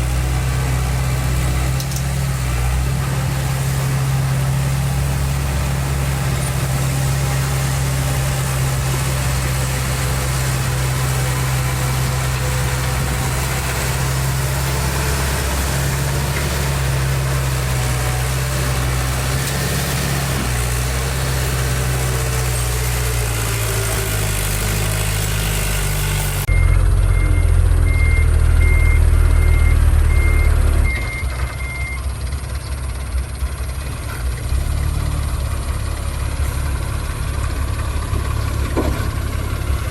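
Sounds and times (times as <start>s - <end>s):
diesel construction machinery running: 0.0s - 39.9s
reversing alarm beeping: 26.5s - 32.1s.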